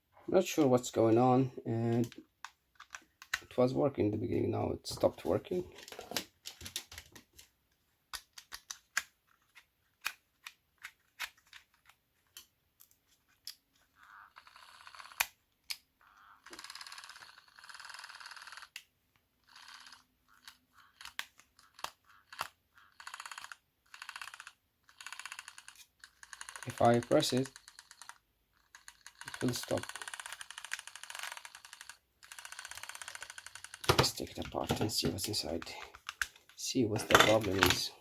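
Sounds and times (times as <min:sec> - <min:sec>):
plastic clicks and rattles: 0:01.8 - 0:03.6, 0:05.2 - 0:07.5, 0:08.1 - 0:14.5, 0:20.3 - 0:37.8.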